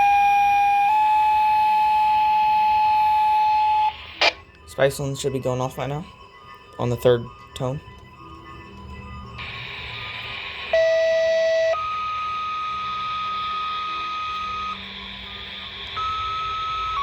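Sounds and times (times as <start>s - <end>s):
radio static hiss: 2.8s - 4.4s, 9.4s - 17.0s
two-tone paging tones: 9.5s - 14.8s, 16.0s - 17.0s.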